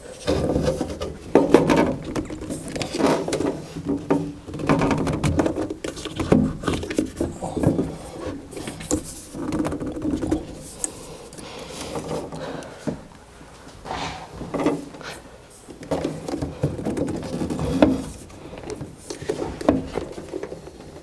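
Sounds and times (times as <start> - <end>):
metal and plastic parts clunking: 0.0 - 13.1.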